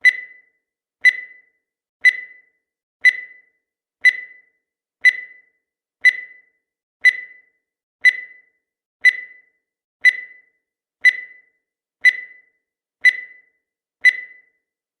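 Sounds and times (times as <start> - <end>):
high-pitched electronic beeps: 14.1 - 14.5.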